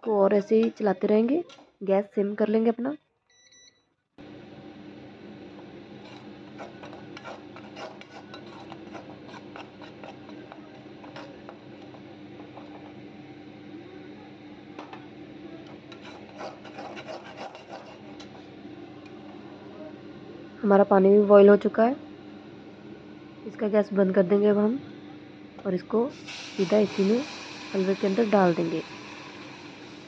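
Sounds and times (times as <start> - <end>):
ladle scraping pan: 6.0 - 11.4, 15.9 - 18.4.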